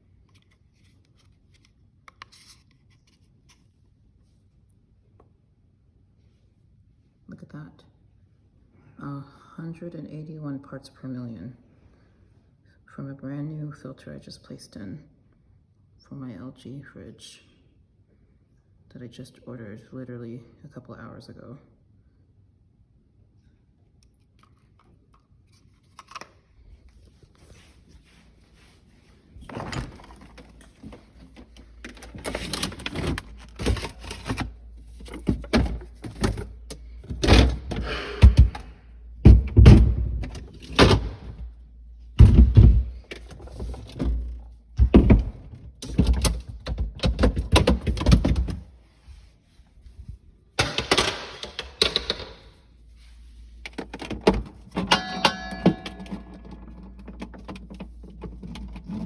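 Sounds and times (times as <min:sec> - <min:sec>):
thunks of hard objects handled: 0:42.2 - 0:48.6, 0:53.6 - 0:59.0.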